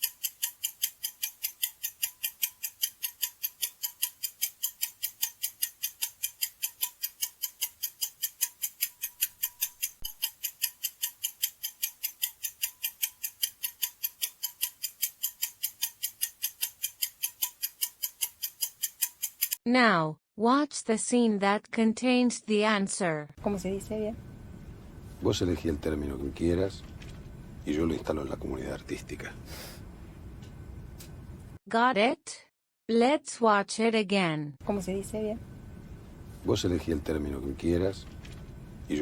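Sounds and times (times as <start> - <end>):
rapid clock ticking: 0.0 - 19.6.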